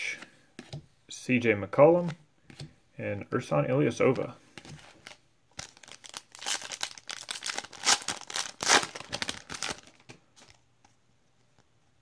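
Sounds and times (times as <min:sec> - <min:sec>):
wrapper tearing and crinkling: 0:05.0 - 0:10.0.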